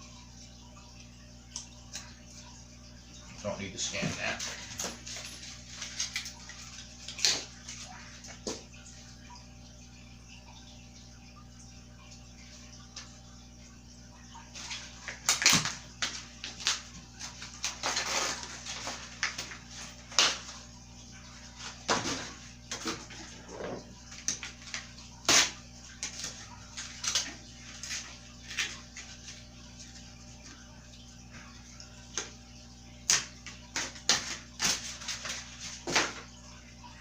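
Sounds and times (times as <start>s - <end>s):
packaging rustling and scraping: 16.1s - 20.6s.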